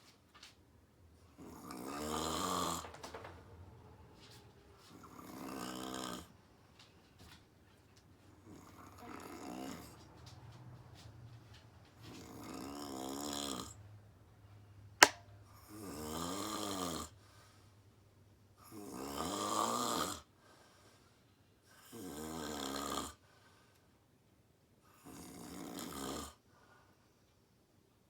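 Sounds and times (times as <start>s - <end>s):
woman snoring: 1.7s - 2.7s, 5.3s - 6.3s
sharp click: 15.0s - 15.3s.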